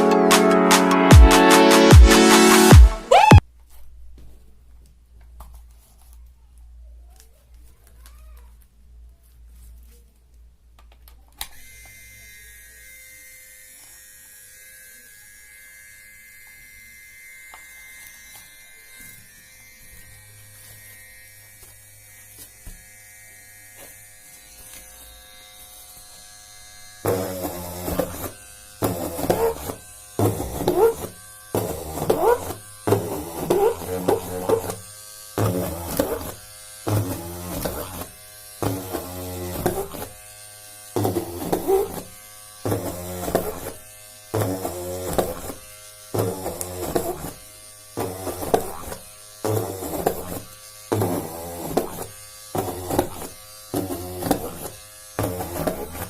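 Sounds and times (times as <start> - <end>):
small electric drill motor buzzing: 11.4 - 56.0.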